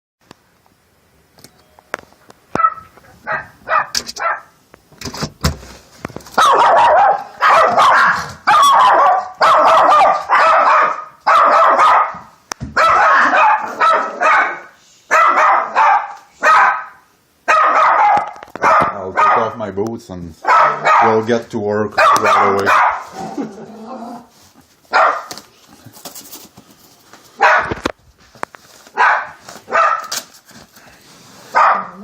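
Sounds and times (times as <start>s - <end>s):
dog barking: 2.6s - 4.6s, 6.4s - 19.6s, 20.4s - 21.3s, 22.0s - 23.2s, 24.9s - 25.4s, 27.4s - 27.8s, 28.9s - 30.2s, 31.5s - 32.0s.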